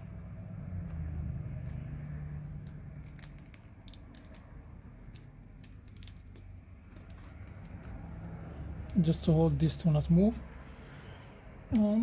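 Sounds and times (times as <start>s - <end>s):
adhesive tape clicks and crinkles: 2.4s - 8.2s.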